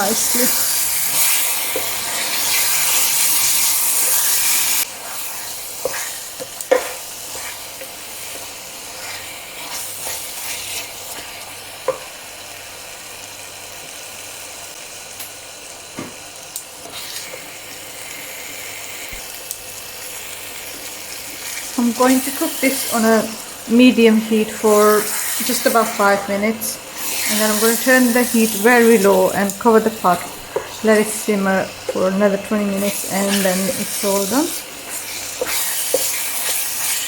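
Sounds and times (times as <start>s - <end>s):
curry sizzling in a pot: 0.0s - 37.0s.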